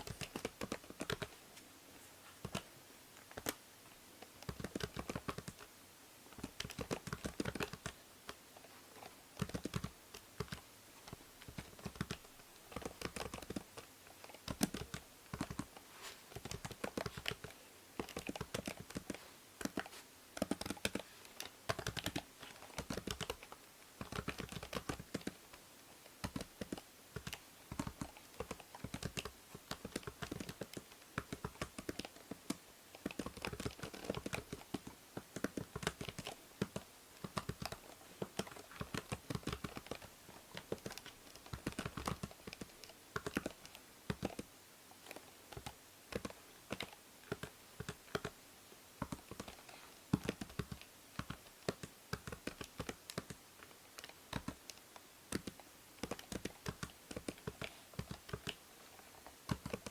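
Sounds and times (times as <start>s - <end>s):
steady microphone hiss: 0.0s - 59.9s
keyboard typing clicks: 9.4s - 15.7s, 16.4s - 25.4s, 26.2s - 48.4s, 54.0s - 58.6s.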